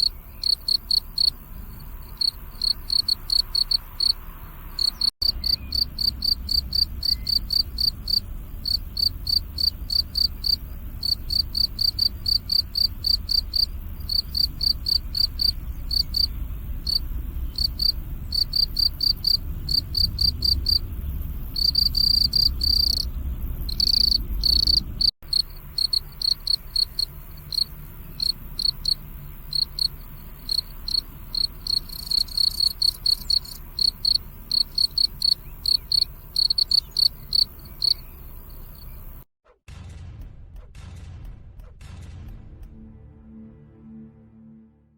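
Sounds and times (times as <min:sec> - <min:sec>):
crickets chirping: 0:00.0 - 0:39.2
low rumble: 0:04.2 - 0:36.3, 0:39.7 - 0:44.7.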